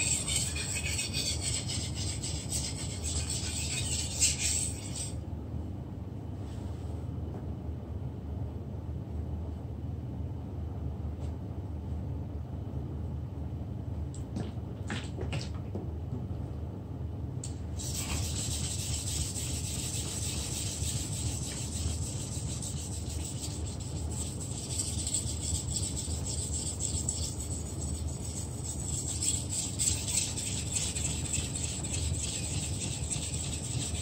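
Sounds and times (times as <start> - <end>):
knife scraping on whetstone: 0.0 - 5.2, 17.8 - 34.0
steady low hum: 0.0 - 34.0.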